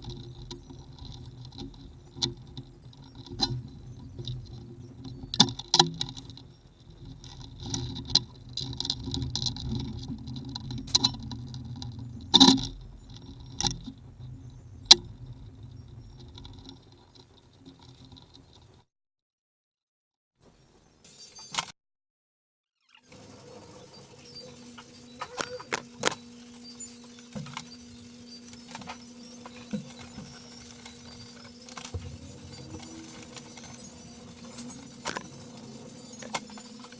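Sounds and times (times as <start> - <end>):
low steady hum: 0.0 - 18.8, 23.2 - 36.9
metallic clicks and knocks: 0.0 - 18.8.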